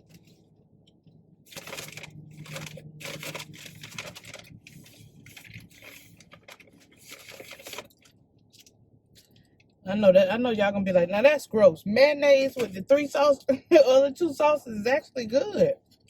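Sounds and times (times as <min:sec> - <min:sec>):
crackling eating noises: 0:01.5 - 0:09.8.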